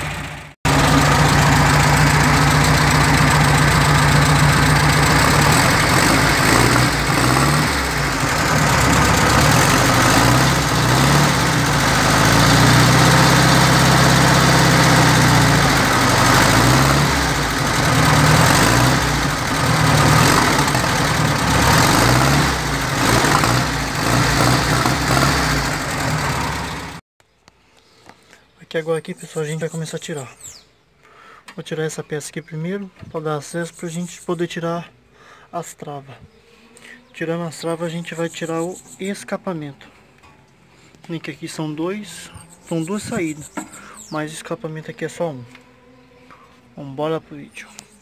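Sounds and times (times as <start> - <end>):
car engine revving without muffler: 0.0 - 27.0.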